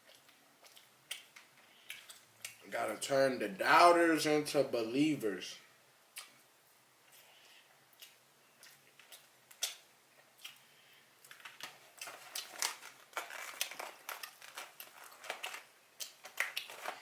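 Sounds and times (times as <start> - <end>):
chewing and crunching food: 0.0 - 2.7, 7.0 - 17.0.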